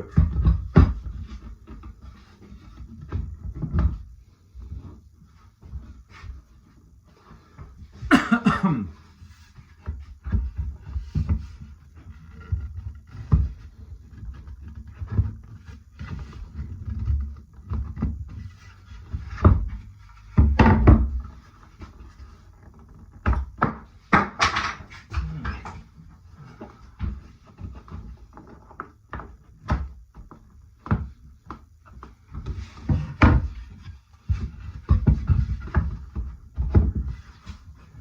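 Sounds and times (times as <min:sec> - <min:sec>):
wooden parts knocking together: 0:23.2 - 0:25.9.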